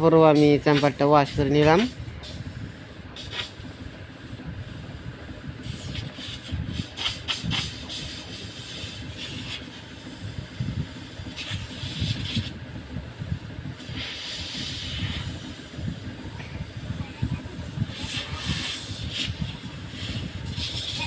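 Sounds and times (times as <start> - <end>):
refrigerant gas hissing: 0.0 - 21.0
steady low rumble: 0.0 - 21.0.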